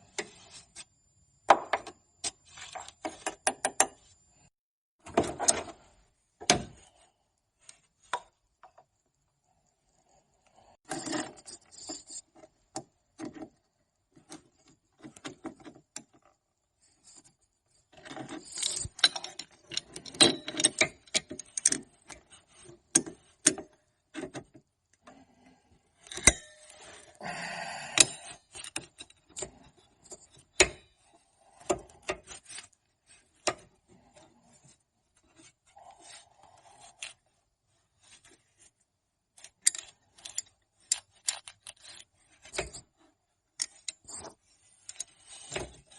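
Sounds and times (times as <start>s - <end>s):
hand tools and metal parts clicking: 17.9s - 25.2s, 25.9s - 27.2s, 27.9s - 34.7s, 39.3s - 45.9s.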